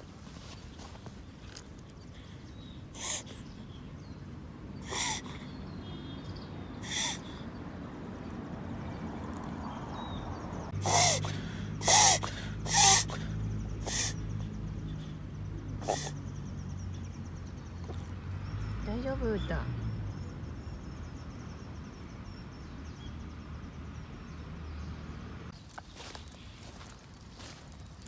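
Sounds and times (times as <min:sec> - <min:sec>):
dog reverse sneezing: 0:03.0 - 0:03.4, 0:04.8 - 0:05.5, 0:06.8 - 0:07.4, 0:10.8 - 0:14.3, 0:15.8 - 0:16.2.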